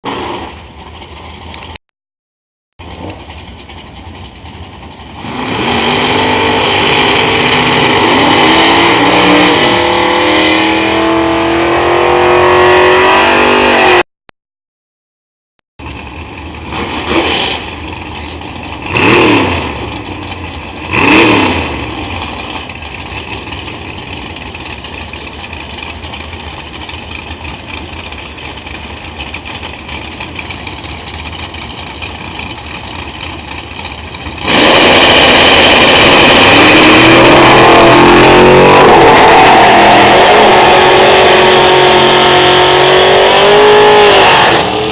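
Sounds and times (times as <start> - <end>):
racing car engine revving: 5.2 - 14.0, 18.8 - 20.1, 20.8 - 22.2, 34.3 - 44.9.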